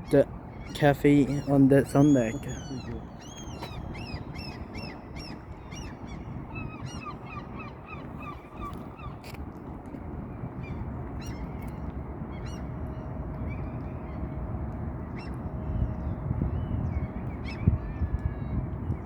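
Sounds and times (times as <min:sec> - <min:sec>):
short bird calls: 0:00.7 - 0:05.9.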